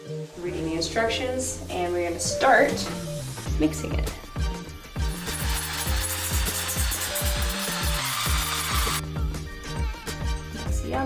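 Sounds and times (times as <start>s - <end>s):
held bass notes: 0.4s - 5.5s.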